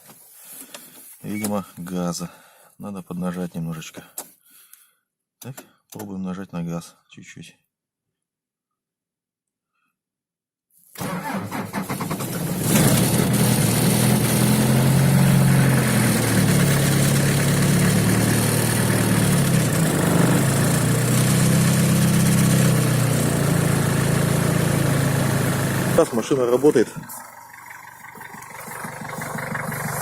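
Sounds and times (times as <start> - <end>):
diesel engine running unevenly: 13.9 - 30.0
starter motor cranking: 19.0 - 30.0.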